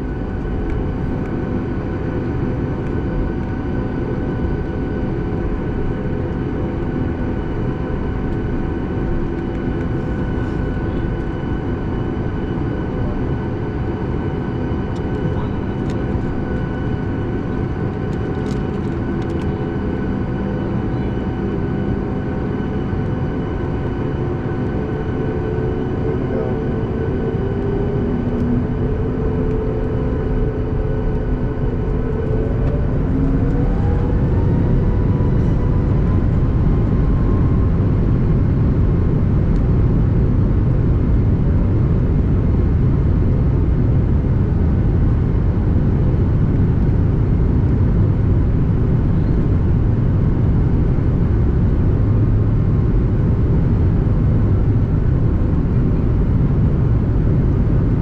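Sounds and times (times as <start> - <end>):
whining engine tones: 10.2 - 39.0.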